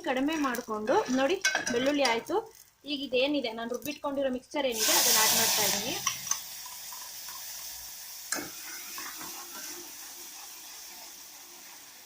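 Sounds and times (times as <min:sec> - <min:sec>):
paste sizzling in hot fat: 0:04.7 - 0:12.0.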